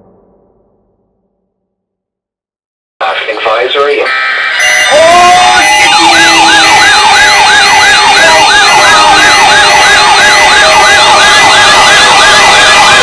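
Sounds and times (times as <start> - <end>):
steady high alarm tones: 4.0 - 13.0
warbling siren tone: 4.1 - 13.0.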